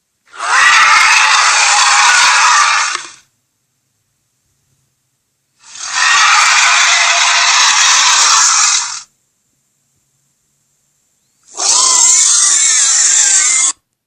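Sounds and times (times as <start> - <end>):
harsh hissing creature: 0.3 - 3.2, 5.6 - 9.1, 11.5 - 13.8.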